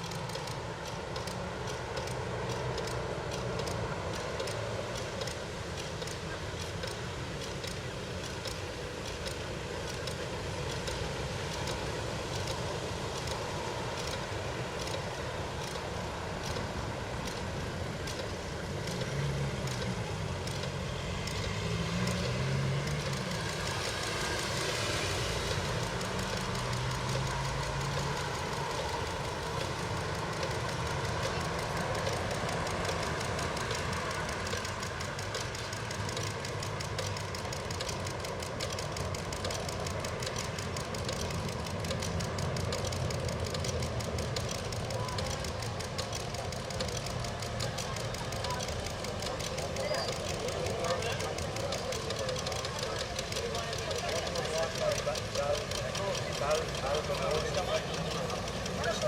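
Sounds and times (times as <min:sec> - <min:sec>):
steady light ticks: 0:00.0 - 0:59.0
vehicle engine passing: 0:18.6 - 0:37.2.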